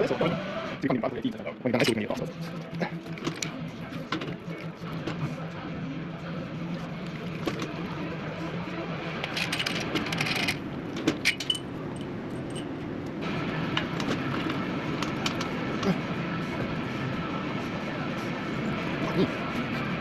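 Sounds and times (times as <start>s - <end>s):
metal parts clinking and rattling: 9.2s - 12.8s.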